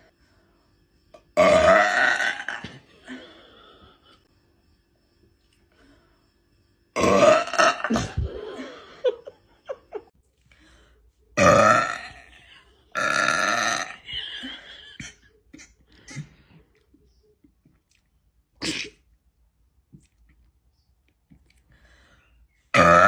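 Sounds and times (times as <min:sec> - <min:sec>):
woman burping loudly: 0:01.4 - 0:03.2, 0:07.0 - 0:08.6, 0:11.4 - 0:16.2, 0:22.7 - 0:23.0.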